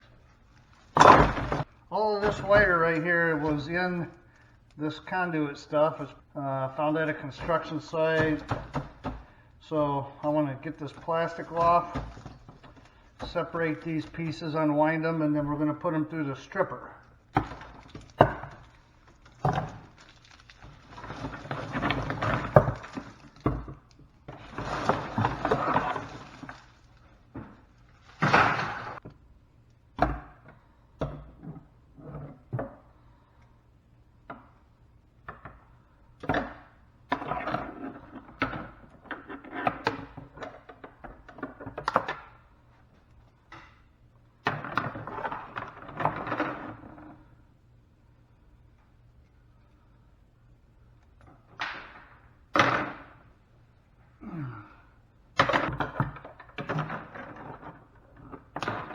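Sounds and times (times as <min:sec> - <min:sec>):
plastic crackling: 0:17.0 - 0:29.0.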